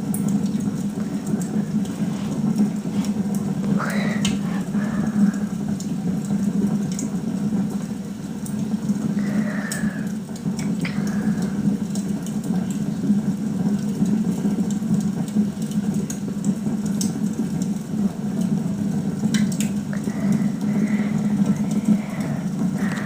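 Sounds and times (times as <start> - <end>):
steady low hum: 0.0 - 13.5, 18.3 - 23.0
log fire crackling and popping: 0.0 - 23.0.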